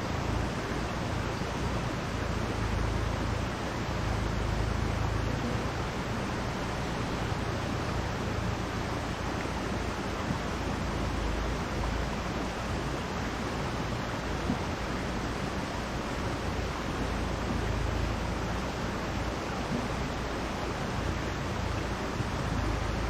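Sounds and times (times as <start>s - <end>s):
mountain stream rushing: 0.0s - 23.0s.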